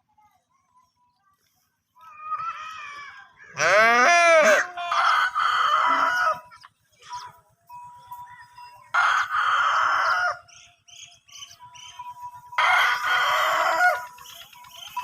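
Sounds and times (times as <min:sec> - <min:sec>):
rooster crowing: 0:04.4 - 0:06.4, 0:08.9 - 0:10.5, 0:12.6 - 0:14.2.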